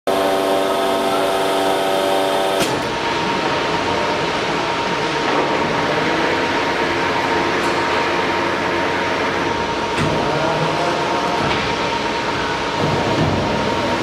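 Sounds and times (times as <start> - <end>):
whirring with high tone: 0.1 - 2.9
machine hum: 0.1 - 14.0.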